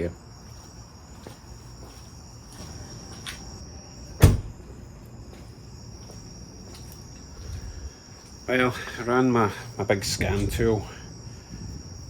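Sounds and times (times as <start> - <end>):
sharp thump: 4.2 - 4.5.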